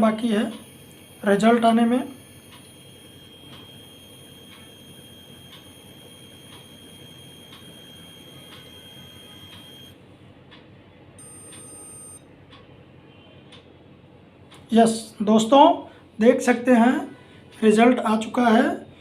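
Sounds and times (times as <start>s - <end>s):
analyzer beep: 0.0s - 10.0s, 11.2s - 12.2s
high electronic whine: 0.0s - 10.0s.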